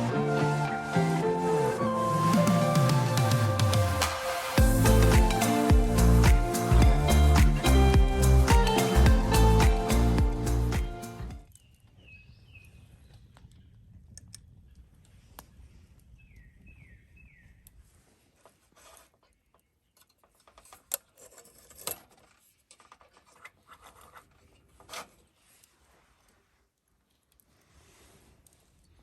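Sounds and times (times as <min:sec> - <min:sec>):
scratches and clicks of handling: 0:18.3 - 0:29.0.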